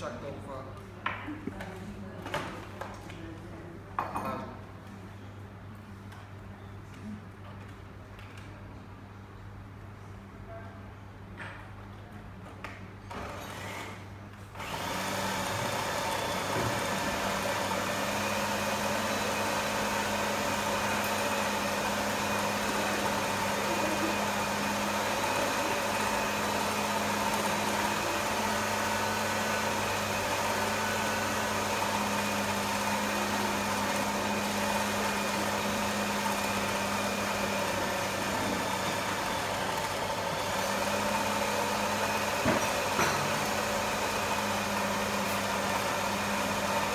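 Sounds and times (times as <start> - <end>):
blender motor humming: 13.1 - 14.0, 14.6 - 46.9.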